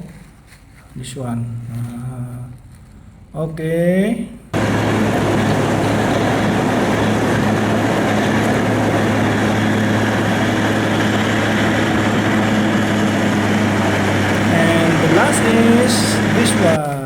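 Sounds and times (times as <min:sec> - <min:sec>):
loud mechanical drone: 0:04.6 - 0:16.8.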